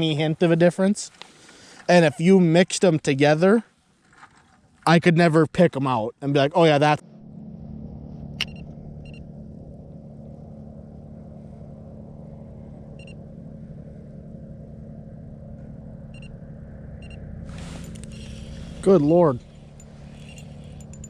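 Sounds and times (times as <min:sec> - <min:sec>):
motor humming: 0:07.0 - 0:21.0
short high electronic beeps: 0:20.1 - 0:21.0.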